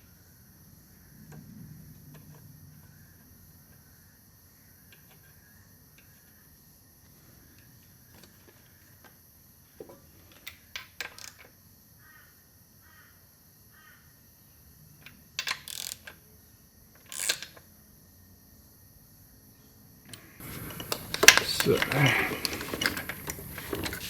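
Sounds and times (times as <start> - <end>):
faint bird calls: 12.0 - 14.2
metal tools clicking and knocking: 20.1 - 24.0.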